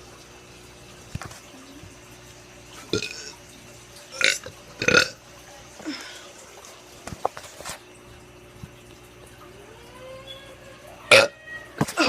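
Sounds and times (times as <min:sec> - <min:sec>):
person burping: 0:02.9 - 0:03.3, 0:04.2 - 0:05.2, 0:11.1 - 0:11.3.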